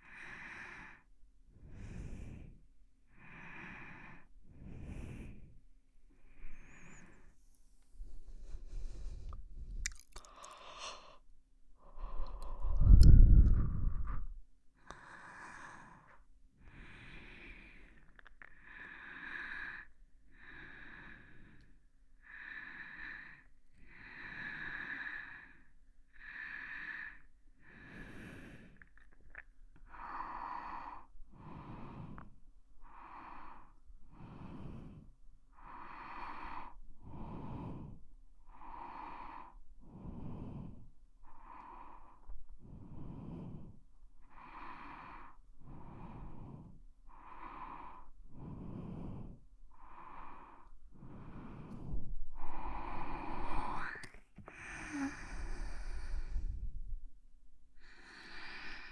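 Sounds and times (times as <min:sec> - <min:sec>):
close breathing in and out: 0:00.0 - 0:58.9.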